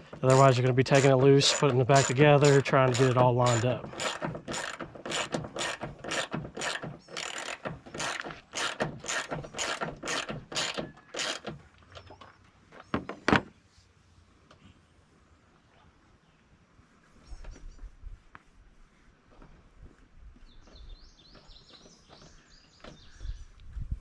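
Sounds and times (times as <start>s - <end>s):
socket ratchet wrench clicking: 0.3s - 11.5s.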